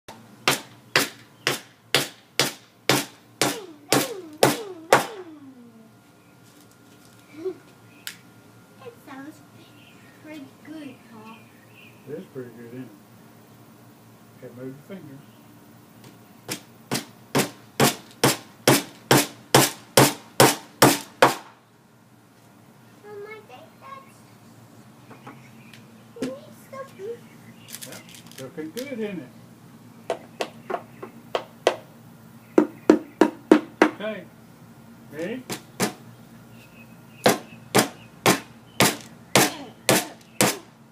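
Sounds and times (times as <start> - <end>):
hammer striking nail into wood: 0.4 - 5.1, 16.9 - 21.5, 37.2 - 40.6.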